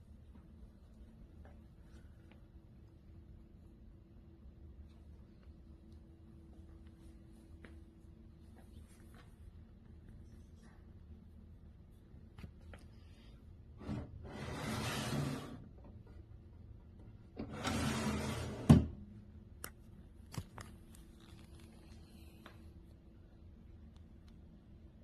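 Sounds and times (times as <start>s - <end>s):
sliding door rolling on track: 13.8s - 15.6s, 17.4s - 18.8s.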